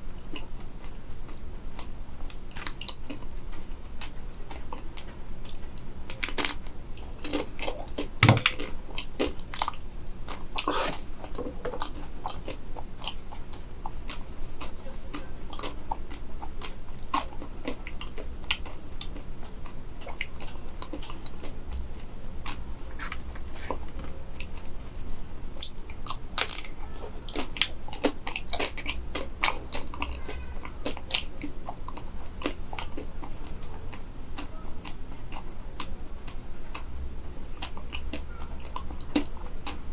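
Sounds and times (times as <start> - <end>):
crunching and chewing crispy food: 0.0 - 39.9.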